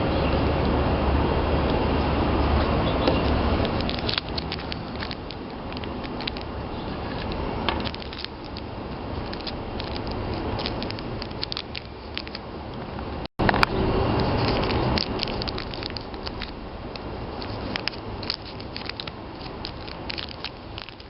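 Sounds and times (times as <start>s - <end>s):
plastic pieces clicking: 3.3s - 8.6s, 9.2s - 12.4s, 14.4s - 21.0s.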